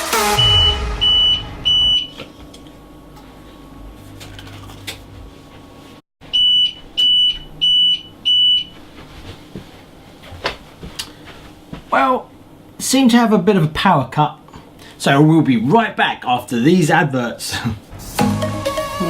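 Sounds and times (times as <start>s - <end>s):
electronic alarm beeping: 0.4s - 2.2s, 6.3s - 8.7s.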